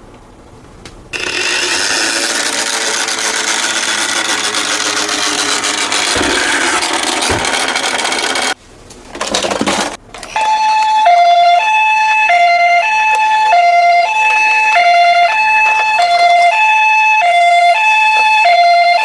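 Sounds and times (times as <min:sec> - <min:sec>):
loud rough noise: 0:01.2 - 0:08.6
toy ambulance siren: 0:01.2 - 0:08.6, 0:10.2 - 0:19.0.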